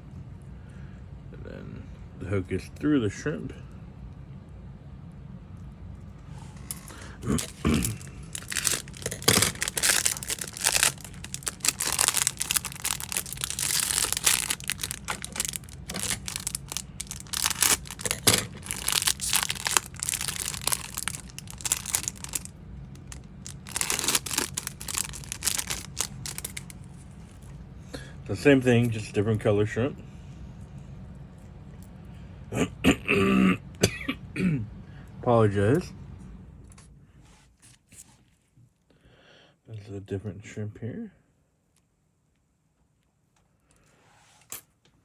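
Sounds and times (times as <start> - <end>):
packaging crinkling and rustling: 6.6 - 27.6.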